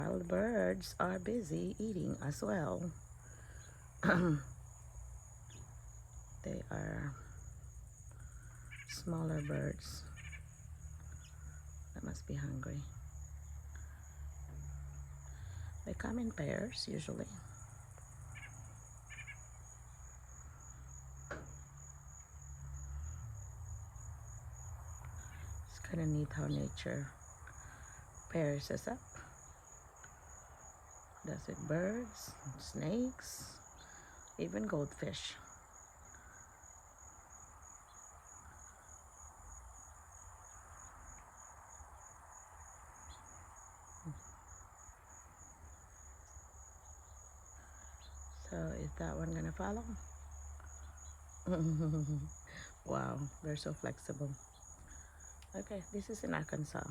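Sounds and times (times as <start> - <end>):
insects trilling: 0.0 - 56.9
small birds chirping: 5.4 - 21.0, 46.1 - 56.9.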